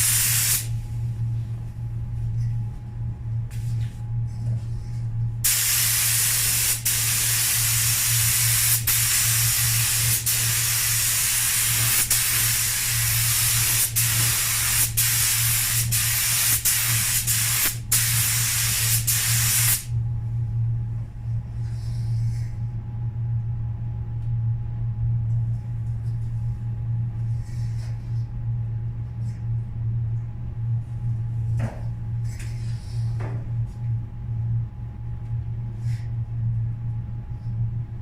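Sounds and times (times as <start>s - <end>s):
paint spray gun hissing: 0.0s - 0.7s, 5.5s - 19.8s.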